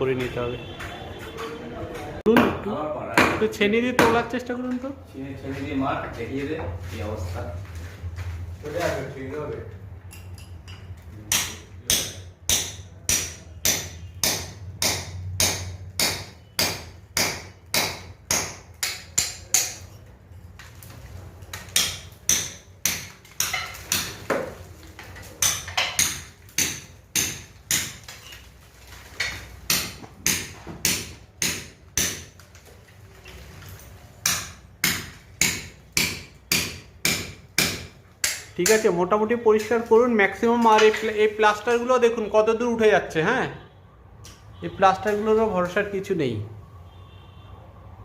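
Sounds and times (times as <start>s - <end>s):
hammer striking steel chisel: 10.2s - 20.0s, 21.5s - 24.5s, 25.2s - 28.4s, 29.2s - 32.4s, 34.2s - 39.0s.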